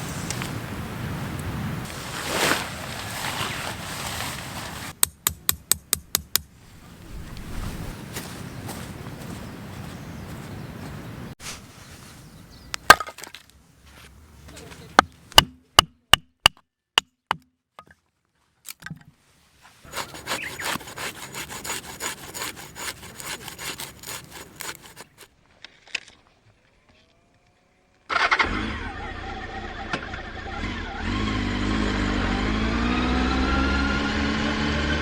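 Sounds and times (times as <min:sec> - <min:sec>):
motorcycle engine starting and idling: 0:28.1 - 0:32.5.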